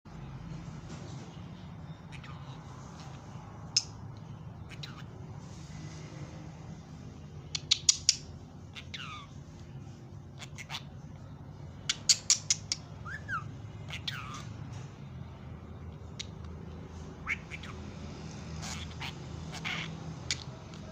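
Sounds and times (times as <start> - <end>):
budgerigars chirping: 1.8 - 5.2, 7.4 - 9.4, 10.3 - 14.6, 15.8 - 20.9.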